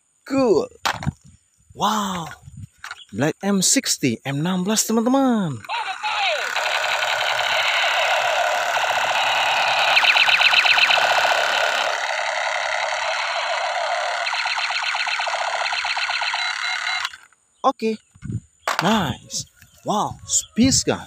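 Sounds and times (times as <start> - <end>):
toy gun rapid rattle: 5.6 - 17.4
warbling electronic siren tone: 5.9 - 17.2.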